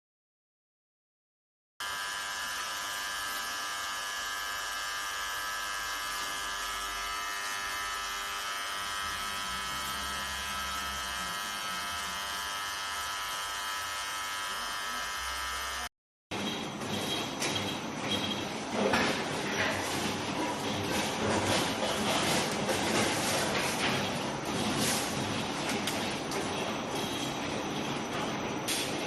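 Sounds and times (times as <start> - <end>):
welding machine buzzing: 1.8 - 29.0.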